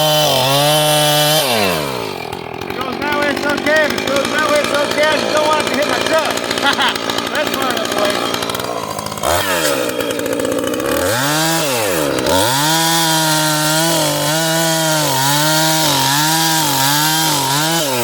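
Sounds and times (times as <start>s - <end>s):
chainsaw revving: 0.0s - 18.0s.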